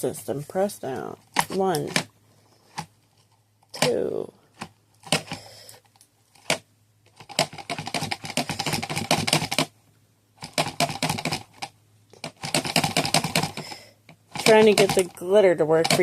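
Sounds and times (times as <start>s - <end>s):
plastic toy clicking: 10.4s - 16.0s.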